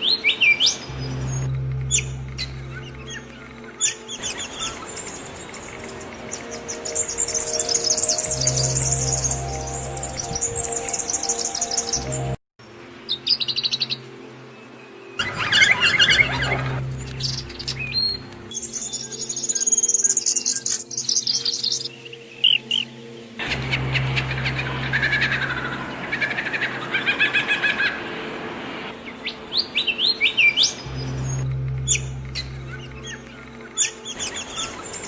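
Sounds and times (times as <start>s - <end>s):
songbirds chirping and singing: 0.0s - 12.4s, 13.0s - 27.8s, 28.9s - 35.0s
steady low hum: 30.8s - 33.8s.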